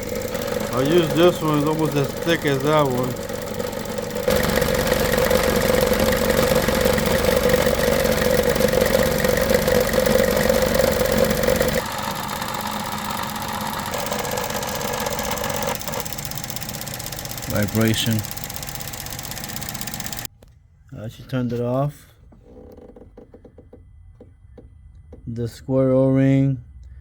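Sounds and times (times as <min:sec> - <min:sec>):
car engine running: 0:00.0 - 0:20.3
droning hum: 0:00.0 - 0:21.8.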